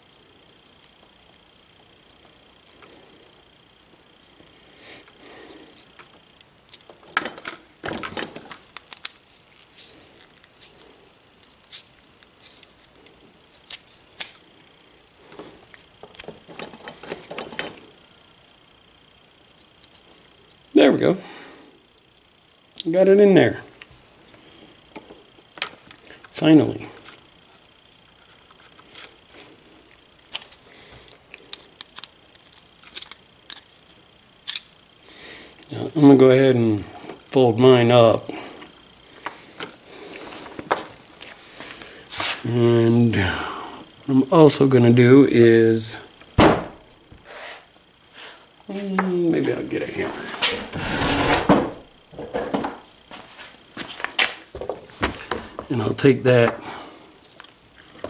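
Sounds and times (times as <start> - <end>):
small metal parts clicking and scraping: 30.3 - 34.9.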